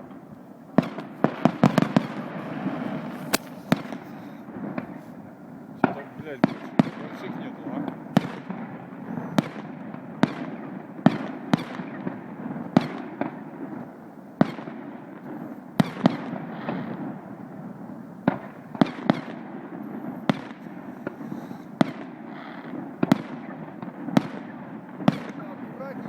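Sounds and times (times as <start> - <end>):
firework shells bursting: 1.0 - 5.0
fireworks crackle: 1.1 - 4.4.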